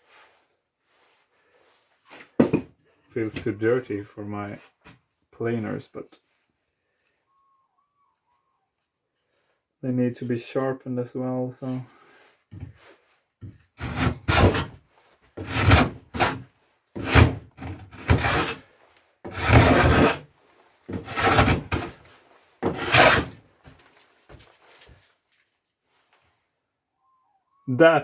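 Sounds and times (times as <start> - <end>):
hand plane scraping along board: 13.8 - 14.8, 15.4 - 16.4, 17.0 - 18.7, 19.3 - 20.3, 20.9 - 23.4.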